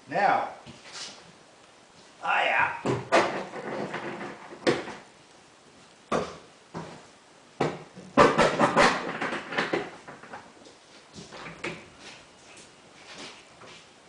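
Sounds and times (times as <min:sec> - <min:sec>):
knocks and clunks: 0:02.8 - 0:05.1, 0:07.6 - 0:10.5.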